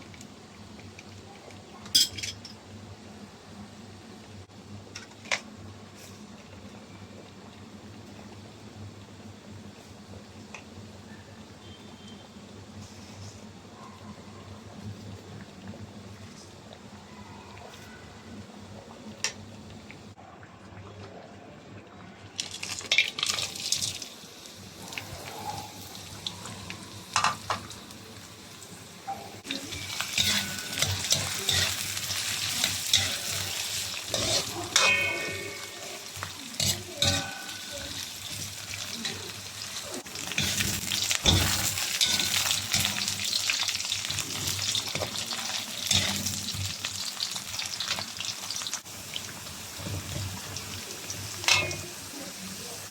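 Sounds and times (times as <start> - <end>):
food sizzling in hot oil: 22.4 - 52.9
utensil scraping a pot: 29.6 - 38.1.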